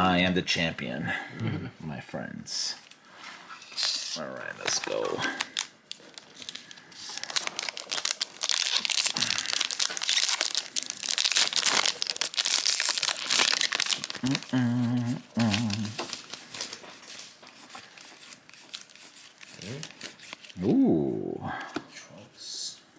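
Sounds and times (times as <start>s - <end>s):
foil wrappers tearing and crinkling: 3.7s - 20.6s.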